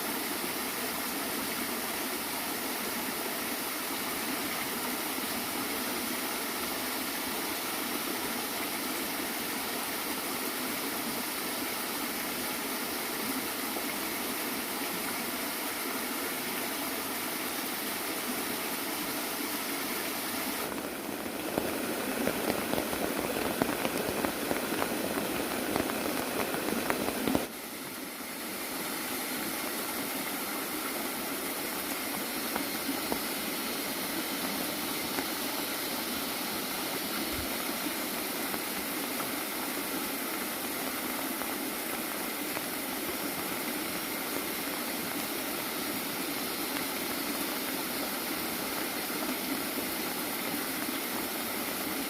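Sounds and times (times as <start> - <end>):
water splashing into pond: 17.4 - 52.0.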